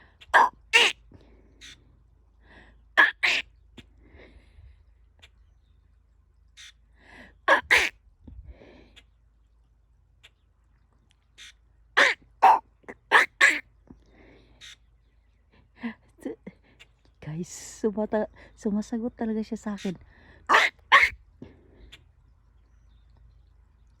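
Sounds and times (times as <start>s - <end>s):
bird giving harsh calls: 0.2s - 1.0s, 3.0s - 3.5s, 7.5s - 7.9s, 11.4s - 13.6s, 20.5s - 21.2s.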